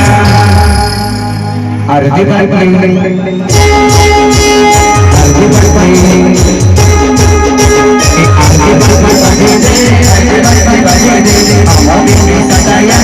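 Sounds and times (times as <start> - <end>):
held melody notes: 0.0 - 13.0
fast deep drum beat: 3.5 - 13.0.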